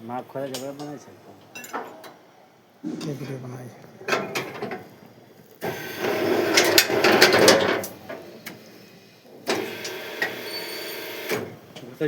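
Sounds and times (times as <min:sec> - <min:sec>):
clattering and knocking: 0:04.0 - 0:04.9.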